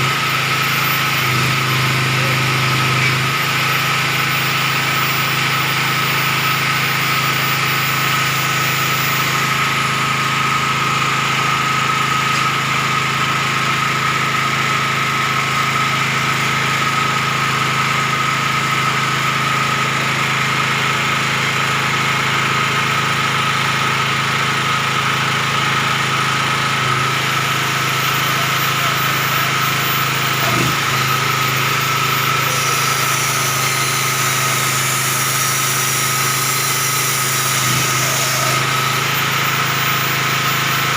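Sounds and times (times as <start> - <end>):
generator engine humming: 0.0 - 40.9
steady whine: 26.0 - 40.9.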